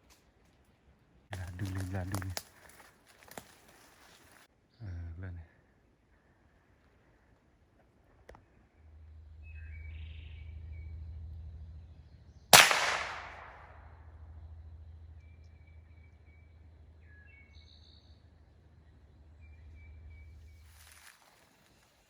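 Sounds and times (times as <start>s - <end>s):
bird chirps: 8.3s - 12.6s, 13.7s - 22.0s
gunshot: 12.5s - 14.0s.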